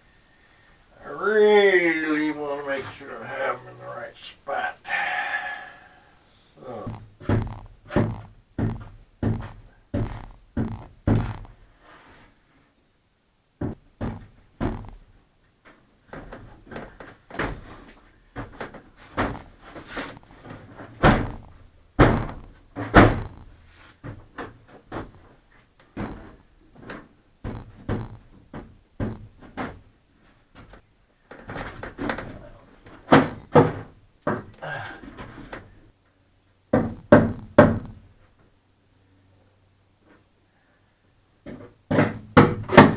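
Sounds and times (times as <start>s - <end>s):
irregular thunks and knocks: 7.2s - 11.4s, 41.4s - 42.9s.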